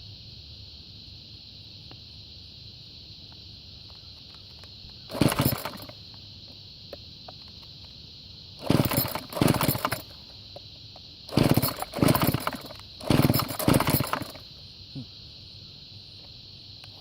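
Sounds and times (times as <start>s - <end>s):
recoil starter pulls: 5.0s - 6.0s, 8.6s - 10.3s, 11.3s - 14.5s.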